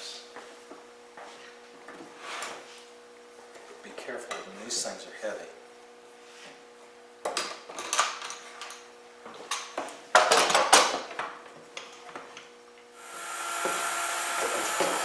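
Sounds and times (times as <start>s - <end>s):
motor running: 13.0s - 15.0s.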